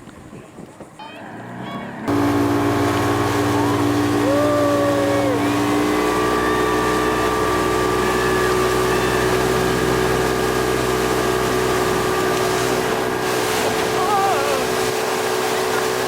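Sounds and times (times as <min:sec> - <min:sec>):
motorboat engine running: 0:00.0 - 0:16.0
wind: 0:00.0 - 0:16.0
rushing water: 0:02.0 - 0:16.0.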